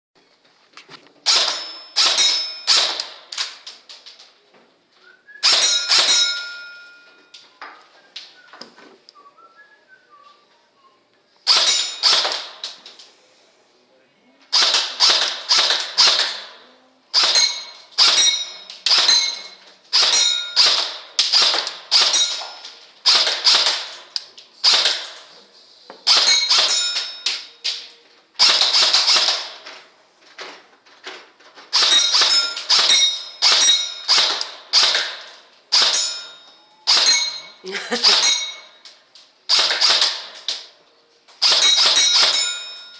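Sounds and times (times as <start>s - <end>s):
airsoft gun shots: 1.2s - 3.5s, 5.4s - 6.4s, 11.5s - 12.8s, 14.5s - 16.6s, 17.2s - 22.4s, 23.0s - 24.0s, 24.6s - 25.2s, 26.1s - 27.1s, 28.4s - 29.6s, 31.7s - 36.3s, 36.9s - 37.4s, 38.0s - 38.6s, 39.5s - 40.4s, 41.4s - 42.6s.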